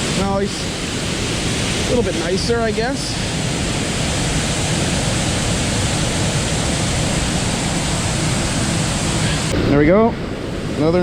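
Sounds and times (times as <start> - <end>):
fast-flowing water rushing: 0.0 - 11.0.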